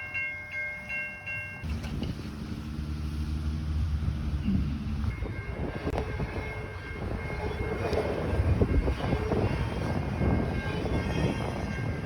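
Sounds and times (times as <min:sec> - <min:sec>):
train wheels rumbling on rails: 0:01.6 - 0:12.0.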